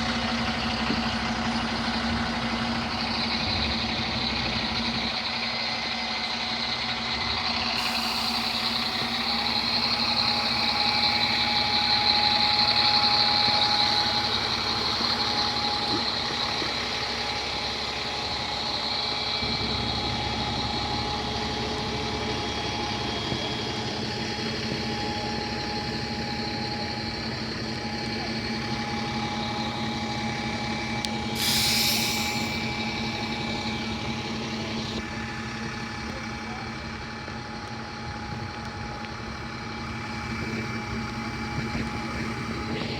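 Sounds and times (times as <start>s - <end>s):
vehicle engine running: 0.0s - 42.9s
short loud hiss: 31.4s - 32.7s.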